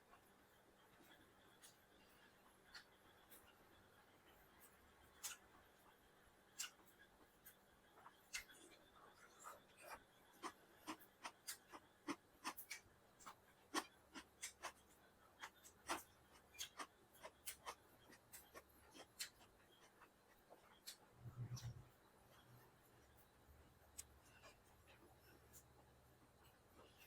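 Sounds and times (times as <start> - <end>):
chewing smacks and clicks: 4.6 - 5.5, 6.6 - 21.8.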